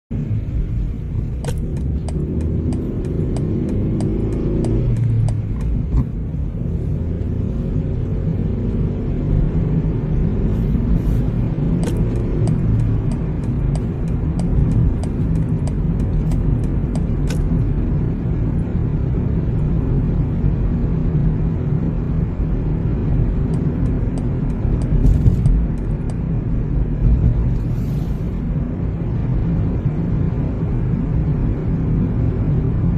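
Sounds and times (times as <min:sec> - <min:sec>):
car road and engine rumble: 0:00.1 - 0:32.9
turn signal ticking: 0:01.1 - 0:07.3, 0:11.3 - 0:17.8, 0:23.4 - 0:27.5.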